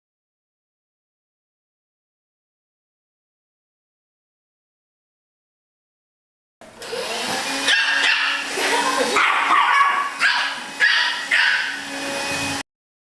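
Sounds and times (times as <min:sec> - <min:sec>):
dog barking and yipping: 0:07.4 - 0:12.2.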